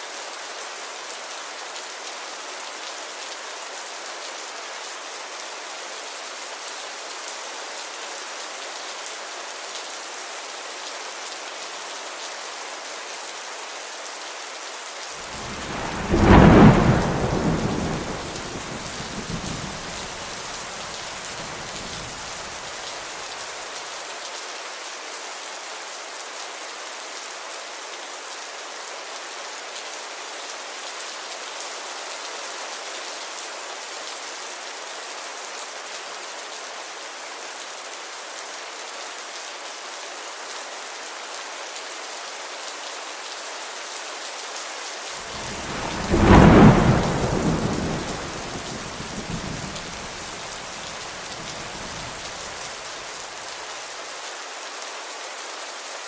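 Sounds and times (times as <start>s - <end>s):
steady rainfall: 0.0s - 56.0s
thunderclap rumbling: 15.2s - 22.6s, 45.3s - 52.6s.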